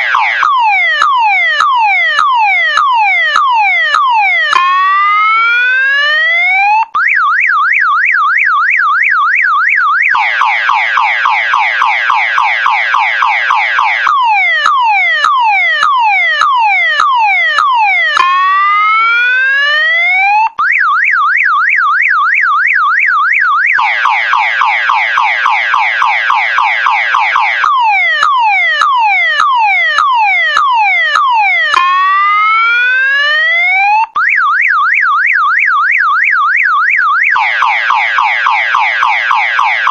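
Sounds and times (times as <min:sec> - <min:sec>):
electronic alarm siren: 0:00.0 - 0:39.9.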